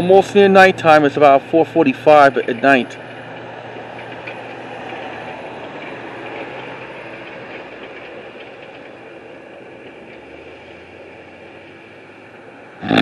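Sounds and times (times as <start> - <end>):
construction machinery running: 0.0 - 13.0.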